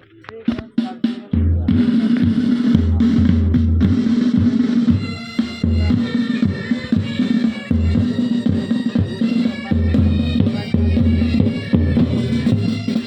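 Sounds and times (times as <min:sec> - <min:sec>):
bass drum beats: 0:00.0 - 0:13.0
wind instrument melody: 0:02.7 - 0:13.0.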